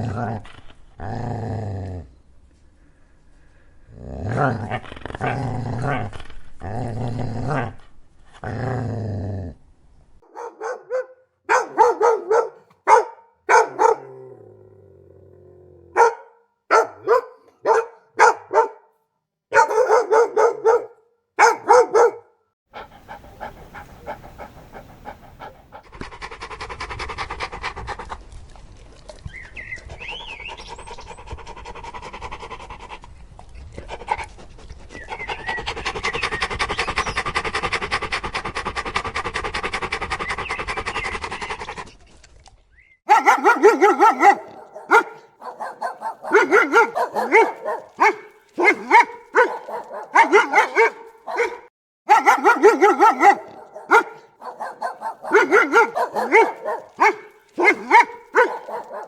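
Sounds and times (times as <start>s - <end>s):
dog growling: 0.0s - 2.1s, 3.9s - 7.8s, 13.8s - 16.0s, 22.8s - 28.1s, 43.1s - 59.0s
dog barking: 10.2s - 14.2s, 15.9s - 18.9s, 19.5s - 22.4s, 43.1s - 59.0s
dog panting: 22.8s - 29.0s, 29.8s - 42.1s, 43.1s - 59.0s.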